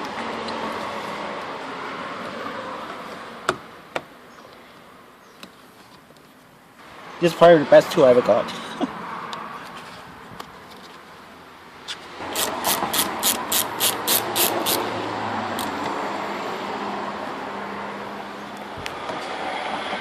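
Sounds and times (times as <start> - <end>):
ratchet wrench clicking: 12.3 - 14.9, 15.6 - 15.8.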